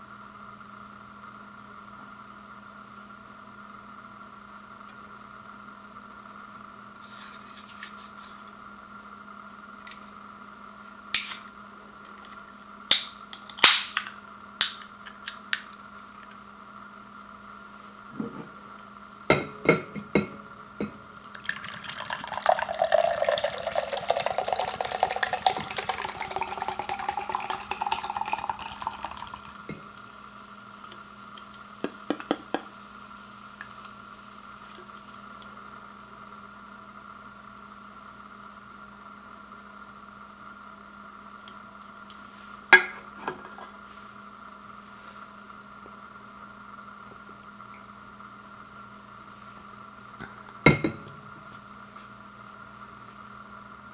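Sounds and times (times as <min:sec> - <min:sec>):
soda pouring and fizzing: 0:21.0 - 0:30.1.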